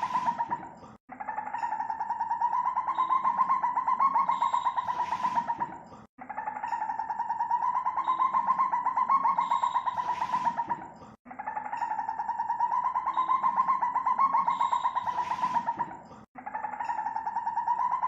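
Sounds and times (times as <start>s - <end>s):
civet pulsing call: 1.4s - 18.0s.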